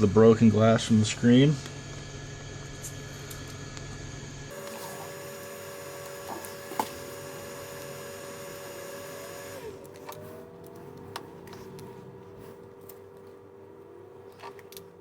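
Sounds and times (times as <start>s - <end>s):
electric tool motor whining: 1.8s - 12.8s.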